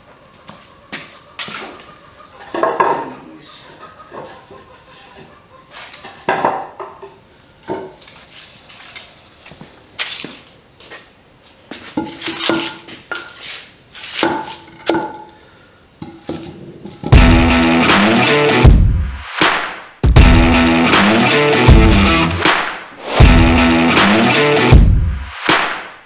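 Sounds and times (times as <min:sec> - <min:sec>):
hard objects clinking: 0:12.0 - 0:15.4, 0:16.0 - 0:17.2
loud guitar music: 0:17.1 - 0:19.2, 0:20.0 - 0:25.3.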